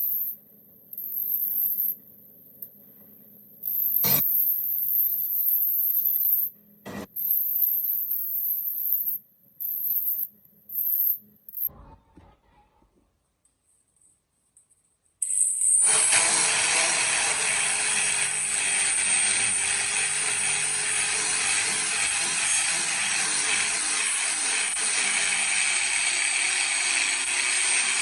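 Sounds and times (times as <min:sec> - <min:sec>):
grinder whining on steel: 0:03.7 - 0:04.6, 0:15.6 - 0:28.0.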